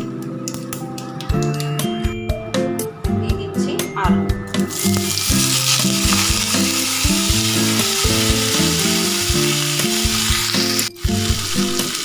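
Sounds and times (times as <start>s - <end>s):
potatoes sizzling in hot oil: 4.7s - 12.0s.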